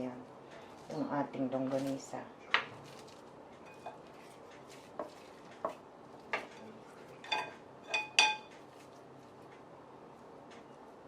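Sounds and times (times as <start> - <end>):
utensils clinking against dishes: 6.4 - 8.6.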